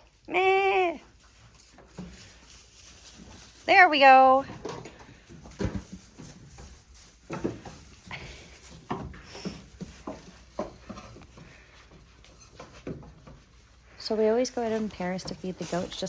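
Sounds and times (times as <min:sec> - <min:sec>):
feeders knocking and clattering: 0:04.0 - 0:16.0.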